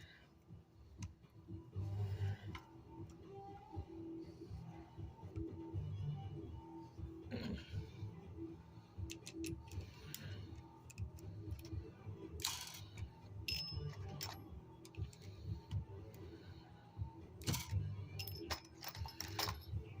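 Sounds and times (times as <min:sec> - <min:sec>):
small metallic clicks: 0:09.0 - 0:11.8
brass cartridge cases rattling: 0:17.4 - 0:19.8.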